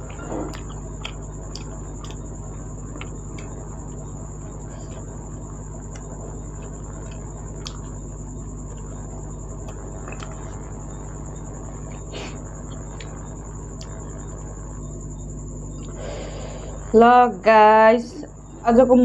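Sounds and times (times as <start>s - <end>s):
high-pitched insect trill: 0.0s - 19.0s
low hum: 0.0s - 19.0s
wet eating clicks and smacks: 0.1s - 4.1s, 5.8s - 8.0s, 9.6s - 10.6s, 13.8s - 14.0s.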